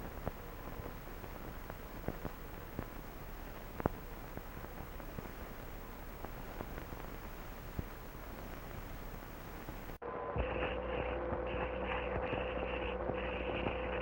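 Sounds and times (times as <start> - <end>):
crackles and pops: 0.0 - 10.0
film soundtrack surface hiss: 0.0 - 14.0.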